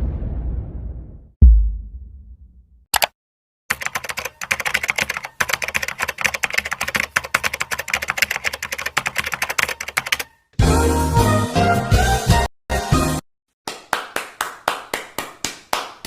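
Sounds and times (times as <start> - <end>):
rapid keyboard typing: 3.7 - 10.4.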